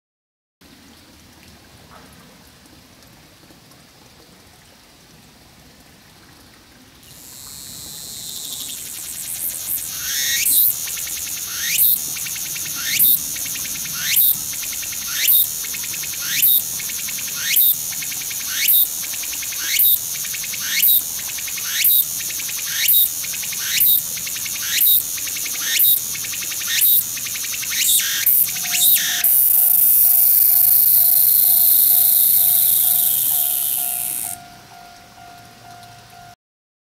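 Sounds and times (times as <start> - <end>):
cicada song: 7.0 - 36.3.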